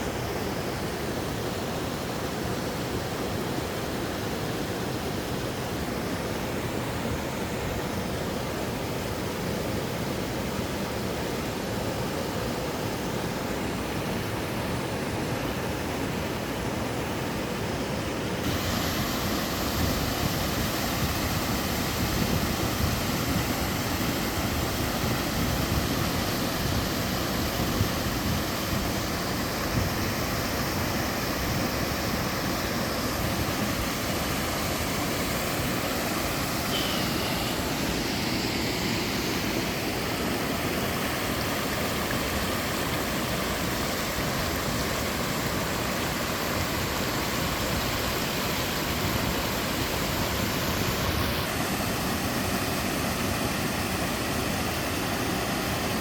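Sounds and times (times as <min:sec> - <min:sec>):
waterfall pouring and splashing: 0:00.0 - 0:56.0.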